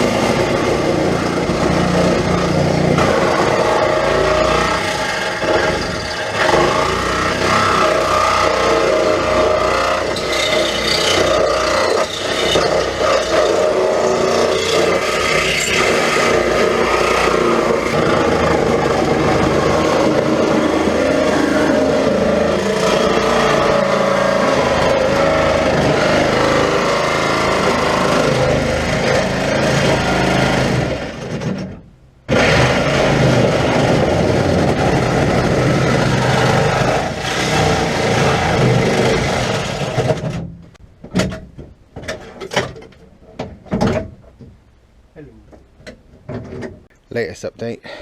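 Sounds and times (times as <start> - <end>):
reciprocating saw cutting steel: 0.0 - 31.6, 32.3 - 40.2
metal clanks and knocks: 39.9 - 44.6.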